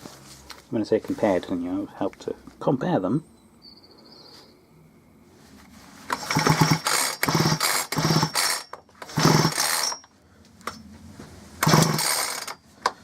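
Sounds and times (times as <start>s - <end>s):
chainsaw starter cord whirring: 6.1s - 10.8s, 11.6s - 12.6s.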